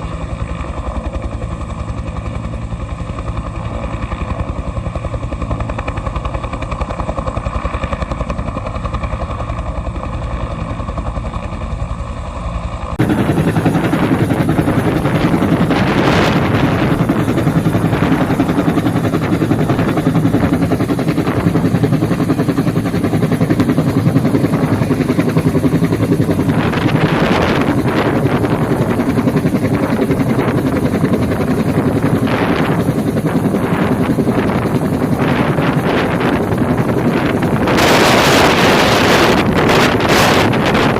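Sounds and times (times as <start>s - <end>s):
helicopter rotor beating: 0.0s - 40.9s
helicopter turbine whine: 0.0s - 40.9s
wind buffeting microphone: 13.0s - 40.9s.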